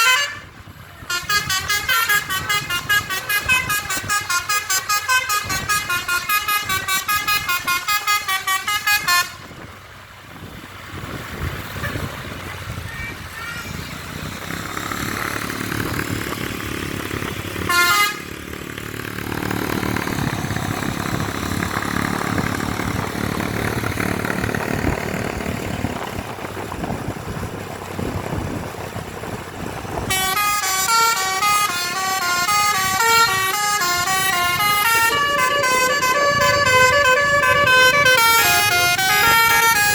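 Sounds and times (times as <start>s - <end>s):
multi-tone bus horn melody: 0.0s - 9.6s, 17.6s - 18.5s, 30.0s - 39.9s
bus engine running: 0.0s - 39.9s
street noise: 0.0s - 39.9s
short horn blast: 1.1s - 9.5s, 17.7s - 18.3s, 30.1s - 39.9s.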